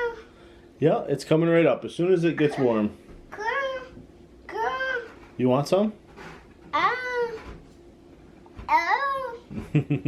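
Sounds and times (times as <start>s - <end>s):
toddler babbling: 0.0s - 0.3s, 2.4s - 5.2s, 6.8s - 7.4s, 8.7s - 9.5s.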